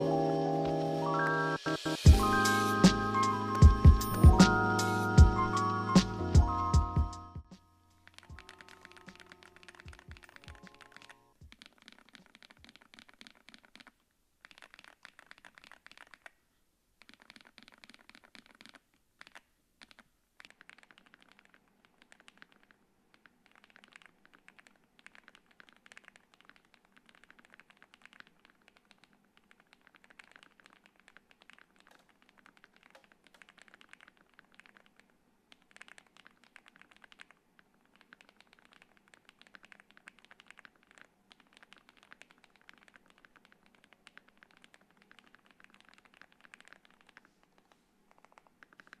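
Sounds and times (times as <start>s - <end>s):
mechanical keyboard typing: 8.1s - 16.4s, 17.0s - 49.0s.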